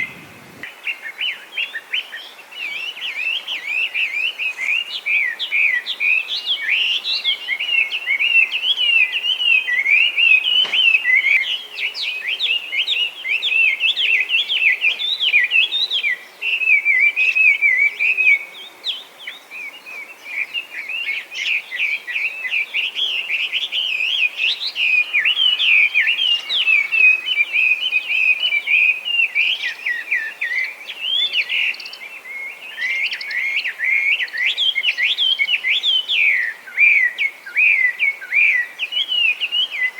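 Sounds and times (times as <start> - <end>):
songbird singing whistled phrases: 0.9 - 39.9.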